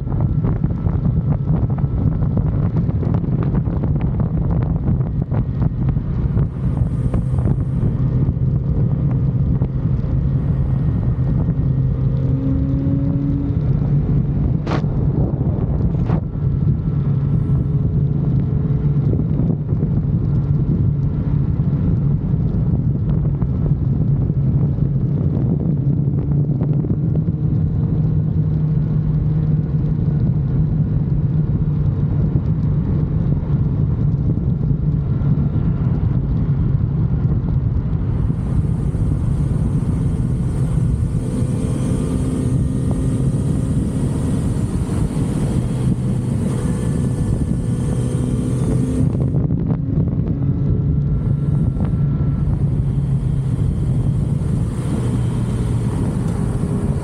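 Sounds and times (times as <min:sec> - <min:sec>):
motorcycle engine cruising: 0:00.0 - 0:57.0.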